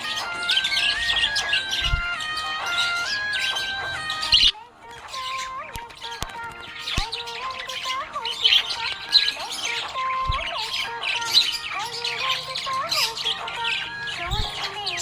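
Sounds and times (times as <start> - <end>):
budgerigars chirping: 0.0 - 15.0.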